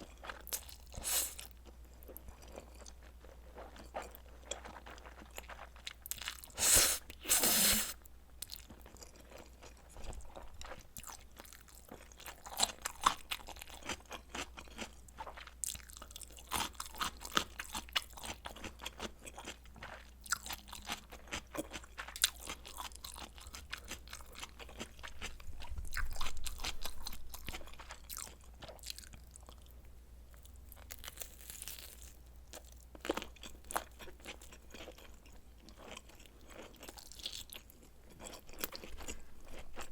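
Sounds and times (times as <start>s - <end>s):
crunchy chewing: 0.0s - 29.7s, 30.3s - 39.9s.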